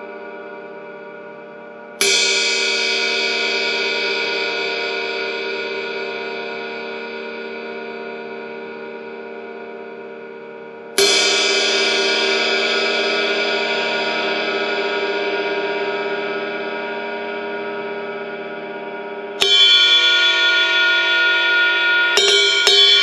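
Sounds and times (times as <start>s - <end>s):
ride cymbal ringing: 19.4s - 23.0s.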